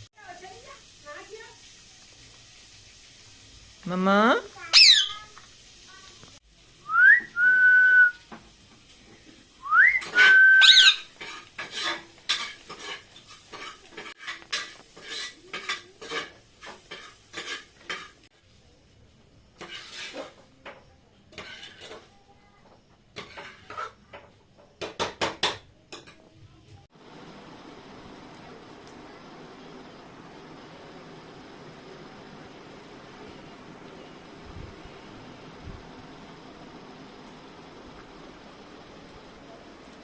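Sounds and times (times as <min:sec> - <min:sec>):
upward sliding whistles: 0:06.9 - 0:08.2, 0:09.6 - 0:11.0.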